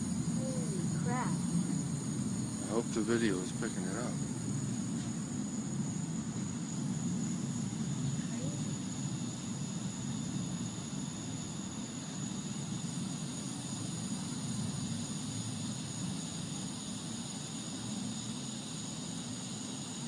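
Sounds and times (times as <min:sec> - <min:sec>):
low rumbling drone: 0:00.0 - 0:10.5.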